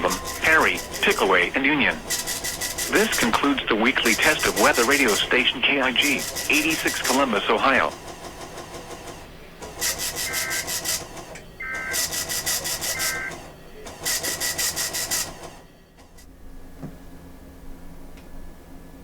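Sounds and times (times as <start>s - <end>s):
harsh buzzing data warble: 0.0s - 7.9s, 9.8s - 13.5s.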